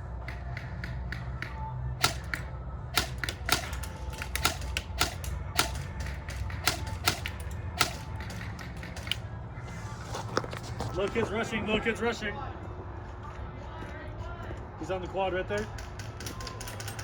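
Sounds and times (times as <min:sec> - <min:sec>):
airsoft gun shots: 0:00.3 - 0:09.2.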